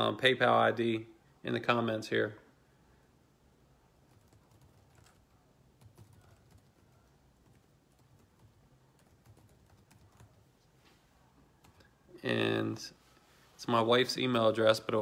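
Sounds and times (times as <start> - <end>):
low room hum: 0.0 - 15.0
keyboard typing: 4.1 - 10.5, 11.6 - 11.9.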